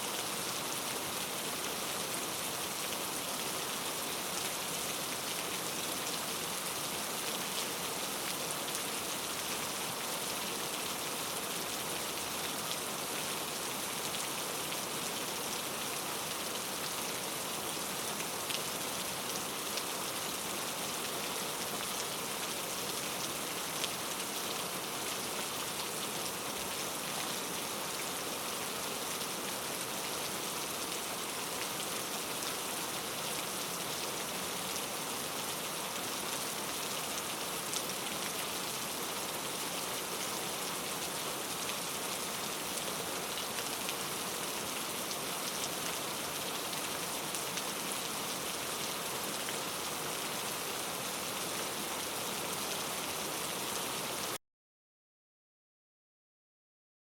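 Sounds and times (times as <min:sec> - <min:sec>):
rain pattering on a surface: 0:00.1 - 0:54.4.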